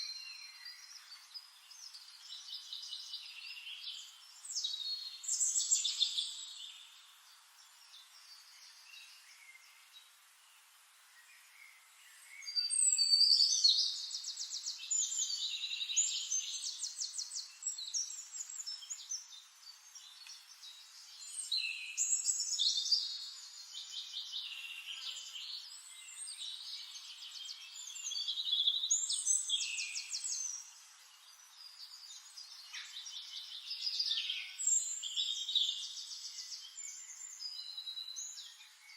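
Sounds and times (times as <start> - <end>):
songbirds trilling and chirping: 0.0 - 38.9.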